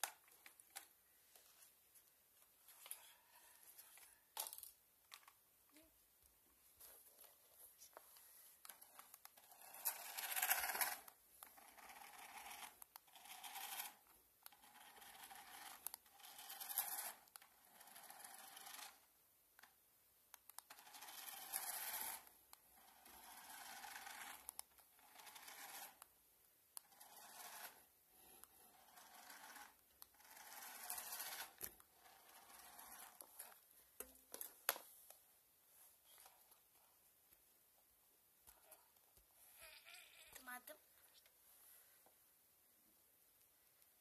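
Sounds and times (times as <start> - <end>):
faint scratching strokes: 26.8 - 33.6.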